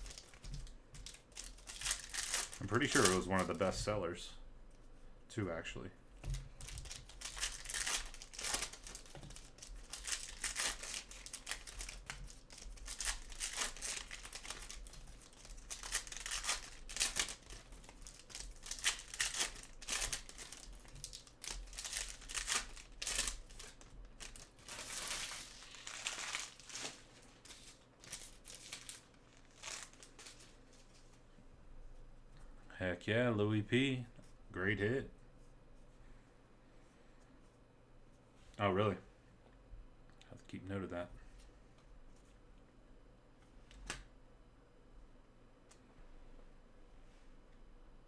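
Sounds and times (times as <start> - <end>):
wrappers being torn and crinkled: 0.0 - 3.8, 6.6 - 31.0.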